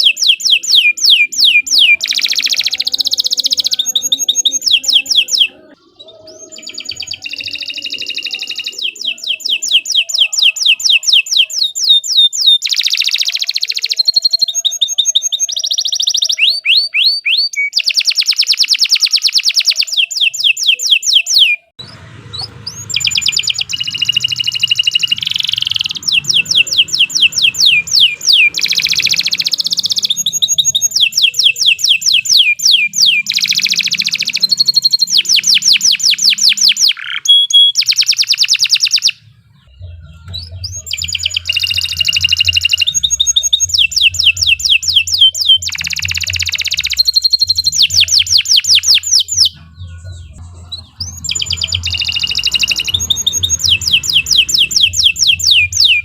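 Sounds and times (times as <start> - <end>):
canary singing trills: 0.0 - 56.0
low hum: 21.8 - 30.4.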